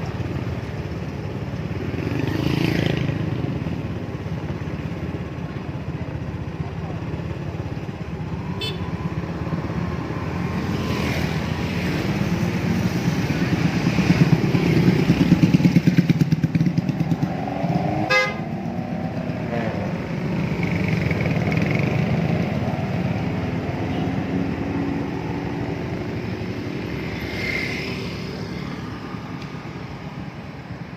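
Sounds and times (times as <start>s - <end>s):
motorcycles passing: 0.0s - 30.9s
road traffic: 0.0s - 30.9s
vehicle horn toot: 8.6s - 8.9s, 18.1s - 18.4s.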